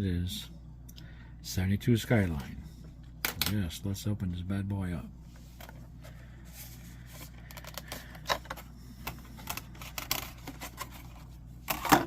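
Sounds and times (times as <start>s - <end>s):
cardboard package being opened: 7.5s - 11.3s.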